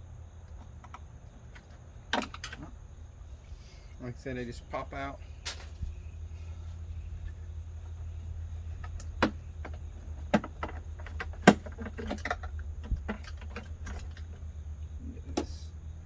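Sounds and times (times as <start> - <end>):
steady low hum: 0.0 - 16.0
plastic clicks and knocks: 8.8 - 14.4.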